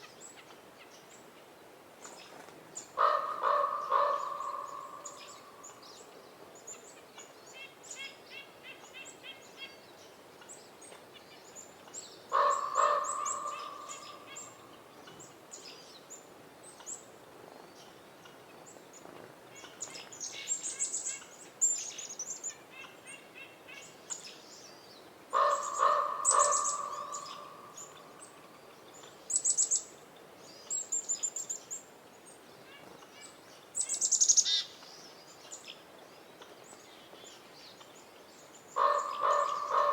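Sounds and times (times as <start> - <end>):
small birds chirping: 2.0 - 39.9
raven croaking: 3.0 - 5.8, 12.3 - 14.7, 25.3 - 28.5, 38.8 - 39.9.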